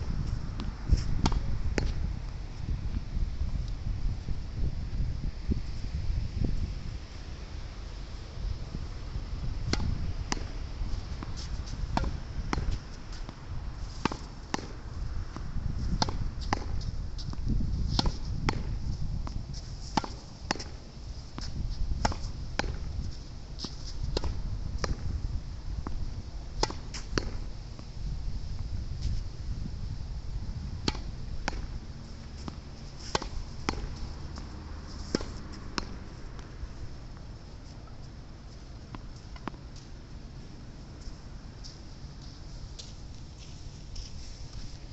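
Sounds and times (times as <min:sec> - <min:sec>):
wind rumble on microphone: 0:00.0 - 0:44.9
tennis ball hitting racket and wall: 0:00.5 - 0:02.0, 0:09.6 - 0:25.2, 0:26.6 - 0:27.5, 0:30.6 - 0:36.7.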